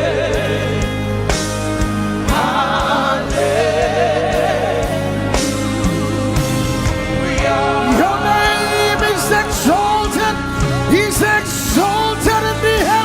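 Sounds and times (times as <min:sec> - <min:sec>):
bass: 0:00.0 - 0:13.0
choir singing long notes: 0:00.0 - 0:13.0
keyboard chords: 0:00.0 - 0:13.0.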